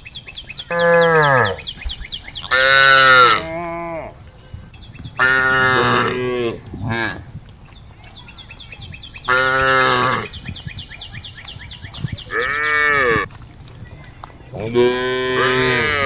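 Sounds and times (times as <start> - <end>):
cows mooing: 0.7 - 1.6, 2.4 - 4.2, 5.2 - 7.2, 9.3 - 10.4, 12.3 - 13.3, 14.6 - 16.0.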